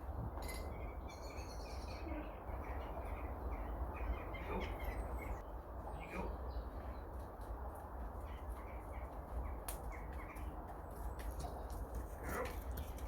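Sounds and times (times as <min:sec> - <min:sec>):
birds chirping: 0:00.4 - 0:13.0.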